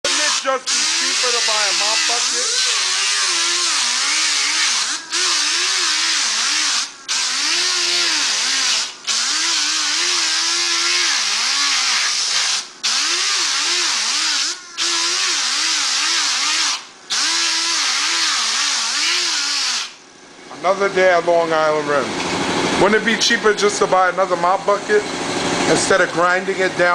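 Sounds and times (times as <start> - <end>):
electric grinder grinding plastic: 0.0 - 20.0.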